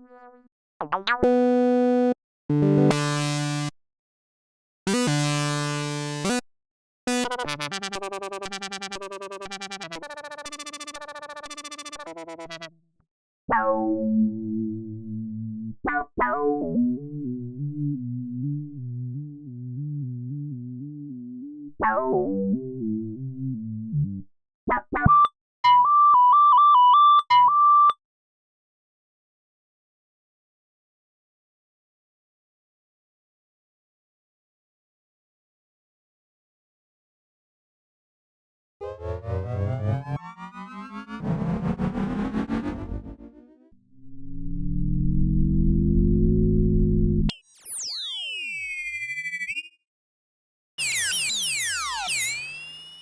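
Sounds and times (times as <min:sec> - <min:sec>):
bright synth lead alternating notes: 0:38.8 - 0:42.0, 0:50.8 - 0:53.0
synthesizer held note: 0:38.8 - 0:43.6
fast pulsing synth sequence: 0:38.8 - 0:43.7
synthesizer chords: 0:38.8 - 0:43.7
synth sound with falling sweep: 0:38.8 - 0:45.3.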